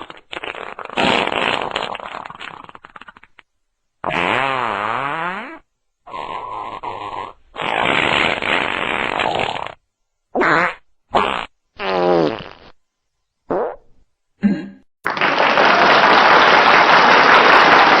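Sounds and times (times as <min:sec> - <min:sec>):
farts: 0:00.0 - 0:09.8, 0:10.4 - 0:12.8, 0:13.5 - 0:14.0.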